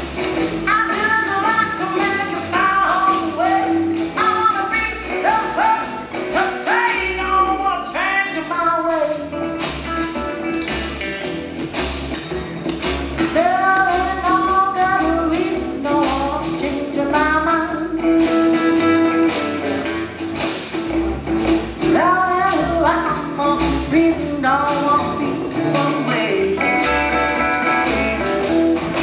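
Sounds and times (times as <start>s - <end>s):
guitar: 0.0s - 29.0s
steady drum beat: 0.0s - 29.0s
woman singing: 0.6s - 9.4s, 13.2s - 19.0s, 21.9s - 27.4s.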